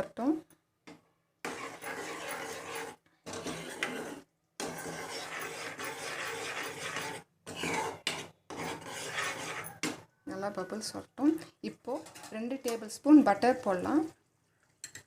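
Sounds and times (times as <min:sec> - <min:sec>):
spoon scraping a cooking pan: 0:01.4 - 0:10.0.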